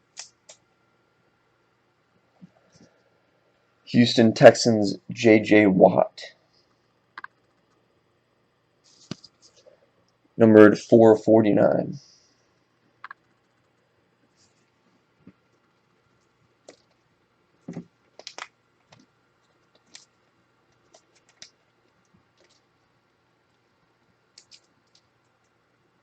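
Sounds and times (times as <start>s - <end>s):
trading cards clicking and scraping: 24.4s - 25.1s.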